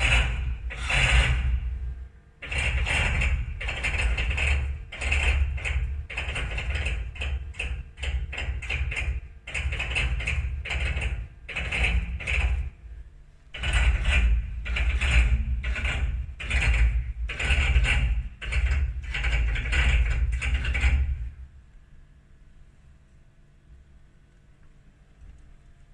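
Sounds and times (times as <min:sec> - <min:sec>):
machine axis mechanical noise: 0:00.0 - 0:12.8, 0:13.5 - 0:21.4.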